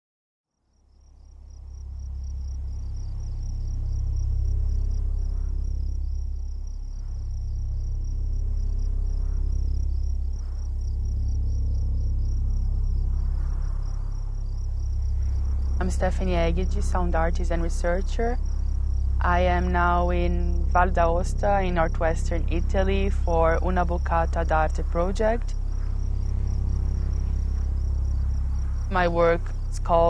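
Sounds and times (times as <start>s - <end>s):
crickets pulsing: 0.6s - 30.0s
deep sub-bass drone: 0.6s - 30.0s.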